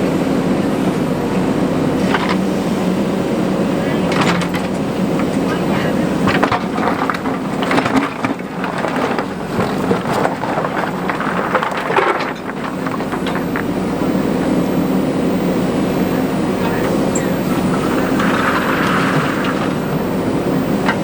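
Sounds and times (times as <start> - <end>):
diesel engine running under load: 0.0 - 21.0
gritty scraping and clattering: 4.1 - 13.9.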